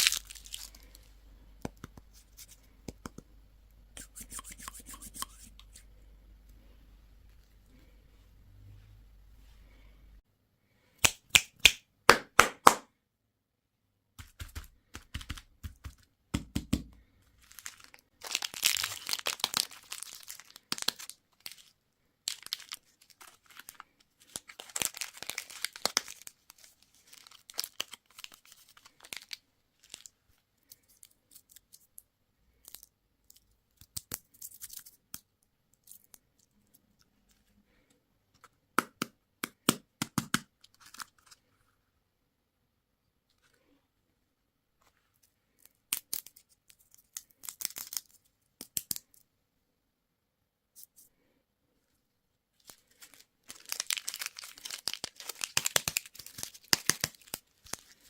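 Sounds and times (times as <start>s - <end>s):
candy wrappers crinkling: 0.0s - 1.1s, 17.2s - 36.6s, 40.6s - 41.5s, 45.5s - 49.3s, 52.6s - 58.0s.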